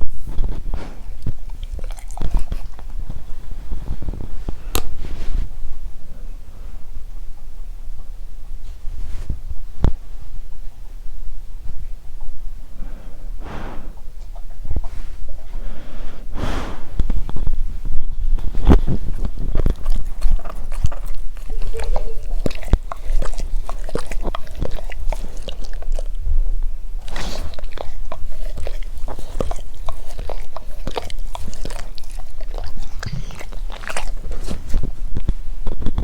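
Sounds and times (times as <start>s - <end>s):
mouth clicks and crackles: 0.0s - 5.2s, 16.4s - 36.0s
dog breathing: 12.6s - 35.6s.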